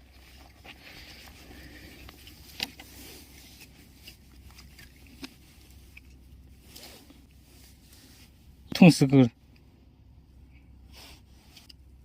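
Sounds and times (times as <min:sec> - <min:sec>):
handling rustling: 0:00.0 - 0:08.6.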